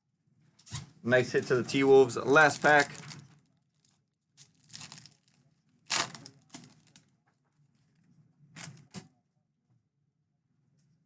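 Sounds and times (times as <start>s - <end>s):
wrapper tearing and crinkling: 2.4s - 7.1s.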